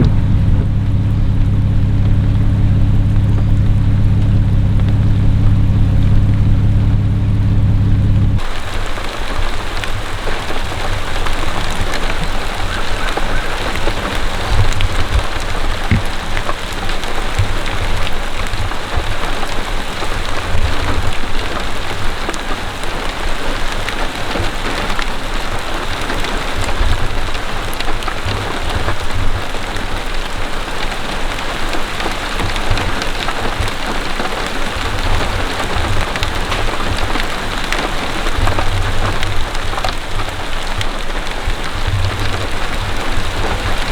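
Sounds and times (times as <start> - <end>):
low rumbles: 0.0 - 24.1
heavy rain falling: 0.0 - 43.9.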